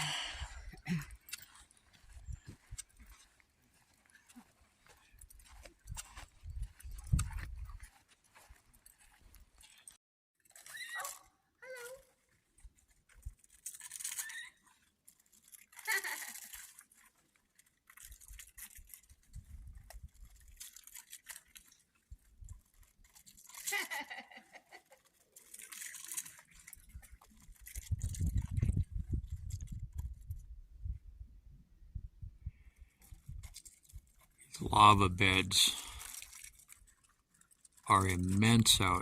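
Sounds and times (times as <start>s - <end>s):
footsteps crunching on cinders: 0.8s - 10.0s, 32.9s - 39.0s
wind rumble on microphone: 5.8s - 7.8s, 27.8s - 33.5s.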